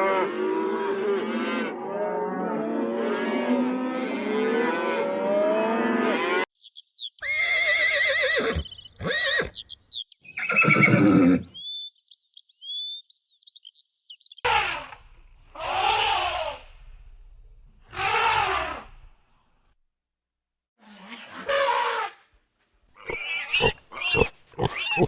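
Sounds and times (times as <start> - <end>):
small birds chirping: 6.5 - 14.5, 23.0 - 25.0
horse whinnies: 7.2 - 9.6, 10.3 - 11.5, 17.9 - 19.0, 23.0 - 25.0
cattle lowing: 23.0 - 25.0.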